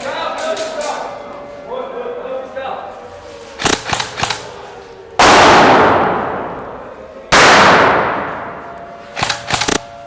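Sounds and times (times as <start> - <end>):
loud echoing blasts: 5.2 - 10.0.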